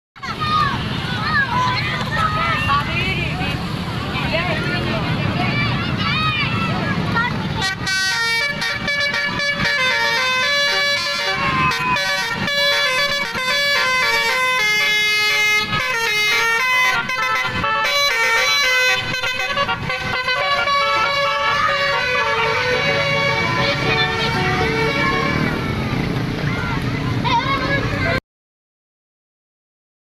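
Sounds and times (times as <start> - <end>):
multi-tone bus horn tune: 7.5 - 25.8.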